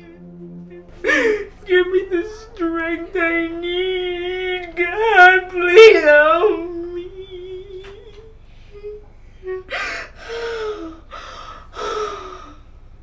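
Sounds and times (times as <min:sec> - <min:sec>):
woman crying: 0:00.9 - 0:12.5
woman sobbing breathily: 0:01.0 - 0:02.4, 0:06.0 - 0:12.6.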